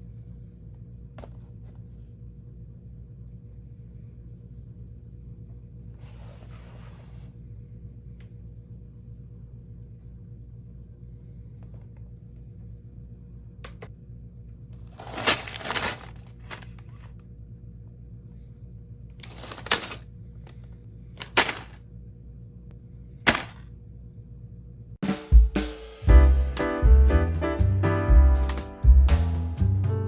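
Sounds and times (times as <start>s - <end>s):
steady low hum: 0.0s - 27.2s
packaging rustling and crinkling: 14.9s - 16.8s.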